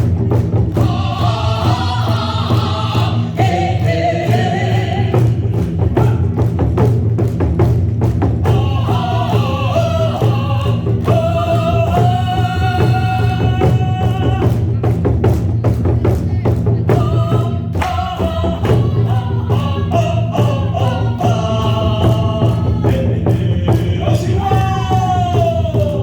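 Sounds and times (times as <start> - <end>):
drum strokes: 0.0 - 26.0
person singing long bending notes: 8.5 - 14.6.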